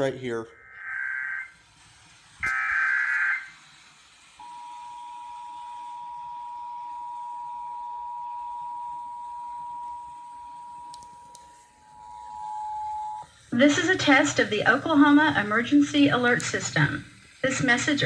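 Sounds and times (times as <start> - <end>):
digital data burst: 2.4 - 3.6
two-tone attention signal: 4.4 - 13.3.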